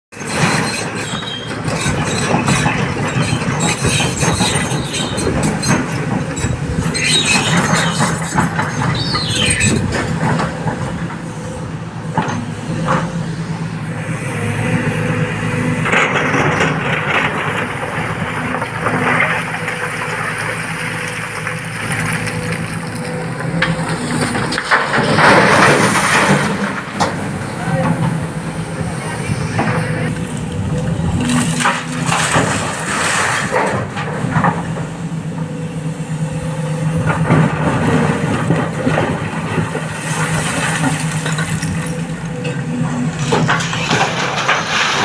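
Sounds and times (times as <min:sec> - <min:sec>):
diesel engines running: 0:00.2 - 0:45.0
high metallic squeal: 0:00.4 - 0:02.4, 0:03.1 - 0:10.1.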